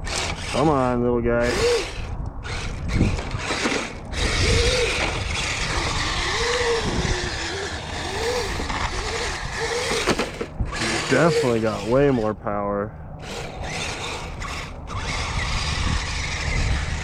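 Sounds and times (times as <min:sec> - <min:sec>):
electric motor whine: 0:00.0 - 0:12.4, 0:13.2 - 0:17.0
gear and track clatter: 0:01.4 - 0:12.0.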